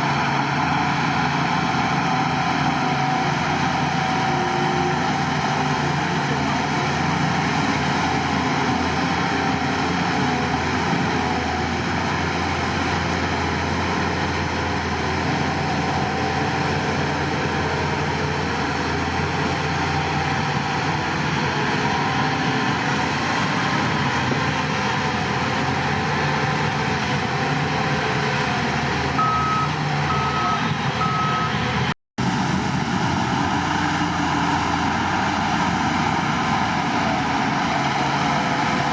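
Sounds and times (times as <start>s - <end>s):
diesel earthmoving machinery running: 0.0s - 38.9s
reversing alarm beeps: 29.2s - 31.6s.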